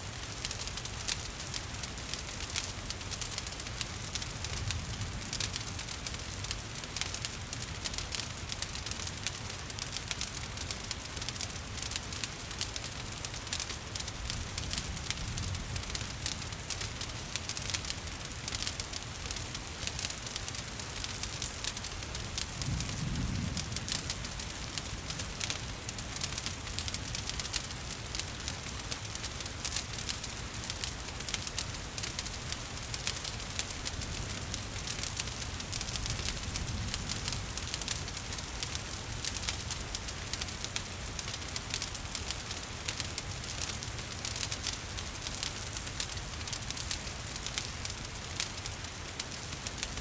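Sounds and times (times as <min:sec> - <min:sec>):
wood fire crackling: 0:00.0 - 0:50.0.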